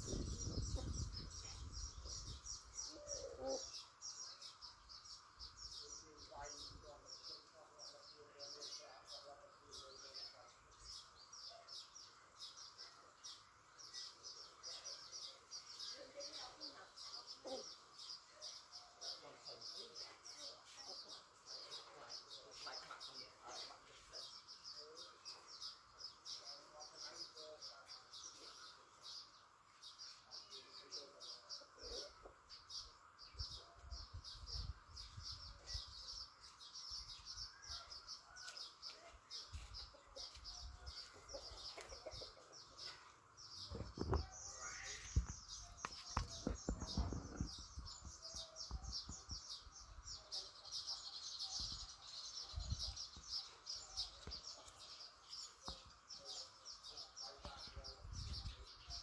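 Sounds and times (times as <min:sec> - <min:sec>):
birds chirping: 0:00.0 - 0:59.0
chickens clucking: 0:40.1 - 0:43.1.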